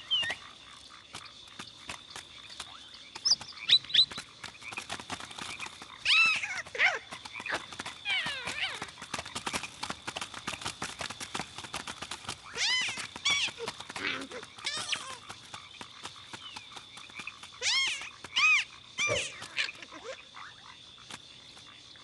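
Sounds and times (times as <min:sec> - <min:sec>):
bird chirping: 0:00.0 - 0:00.5, 0:02.4 - 0:04.3.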